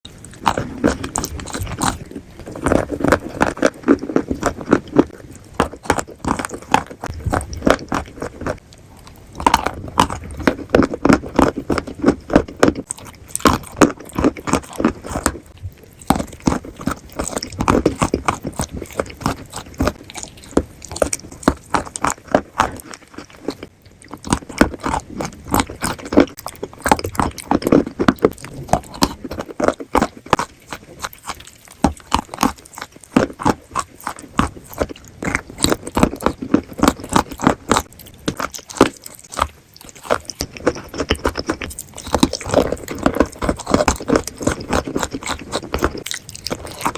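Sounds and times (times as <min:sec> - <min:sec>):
person chewing crunchy food: 0:00.1 - 0:46.9.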